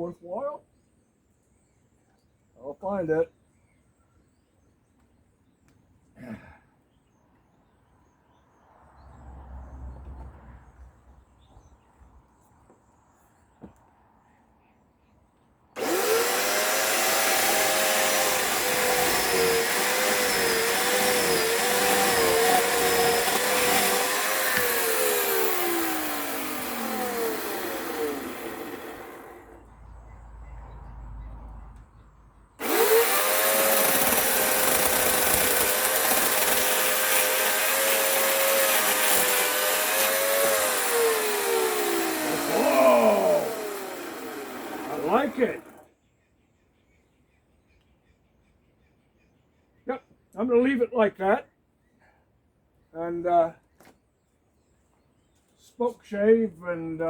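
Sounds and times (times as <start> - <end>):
chainsaw cutting wood: 15.8 - 29.7, 32.6 - 45.9.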